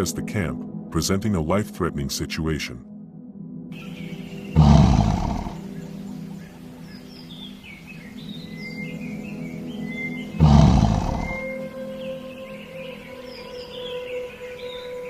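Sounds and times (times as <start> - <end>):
music drone: 3.8 - 15.0
lions roaring: 4.6 - 5.6, 10.4 - 11.4.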